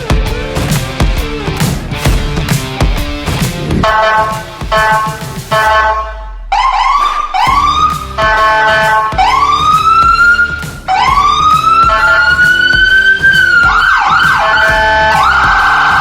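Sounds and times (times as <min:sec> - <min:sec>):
background music with a beat: 0:00.0 - 0:16.0
electronic siren cycling tones: 0:05.6 - 0:16.0.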